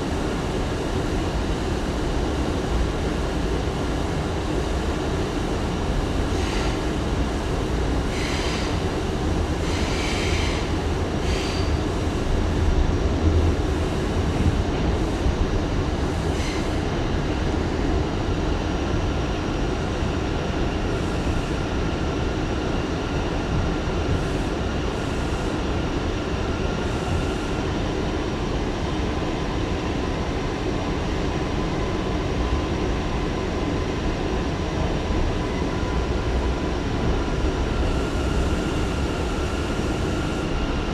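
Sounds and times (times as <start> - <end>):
train wheels rumbling on rails: 0.0 - 40.9
wheels squealing on rails: 6.3 - 6.9, 8.1 - 8.9, 9.6 - 12.1.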